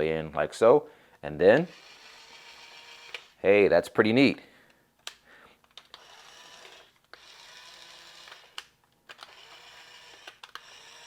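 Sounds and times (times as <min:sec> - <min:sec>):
toy drill motor whirring: 0:01.6 - 0:03.4, 0:05.8 - 0:11.0.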